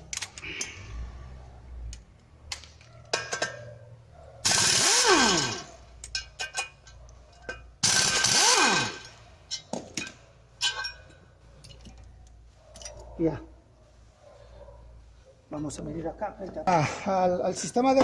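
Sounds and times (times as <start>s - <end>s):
power wrench whirring: 4.4s - 5.8s, 7.8s - 9.2s.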